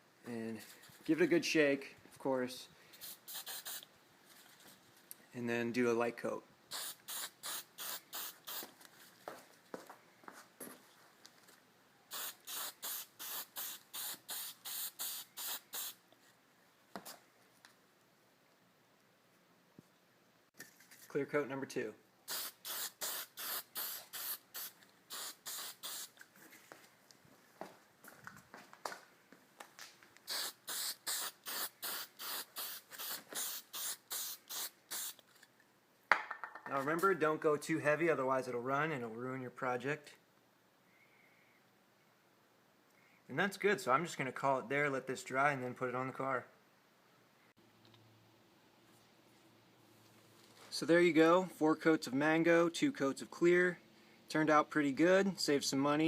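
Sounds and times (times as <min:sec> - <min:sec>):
aerosol can spraying in bursts: 0:03.0 - 0:03.9, 0:06.7 - 0:08.7, 0:12.1 - 0:16.0, 0:22.3 - 0:26.2, 0:30.3 - 0:35.2.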